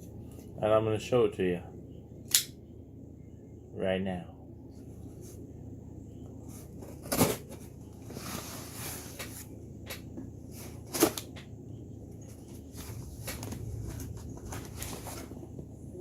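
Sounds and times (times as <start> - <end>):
cardboard rustling: 6.4 - 9.6, 12.2 - 15.8.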